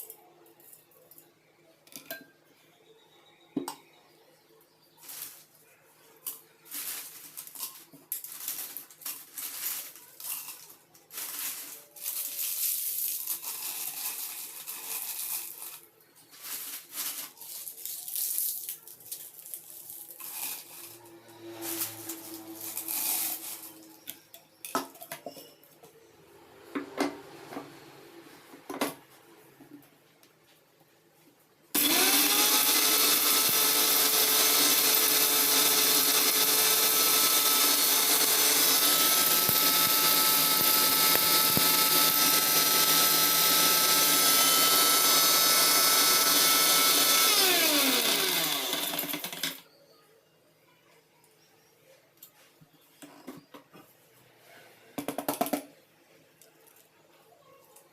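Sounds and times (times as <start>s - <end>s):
mixer grinder motor whining: 20.8s - 24.1s, 31.8s - 49.6s.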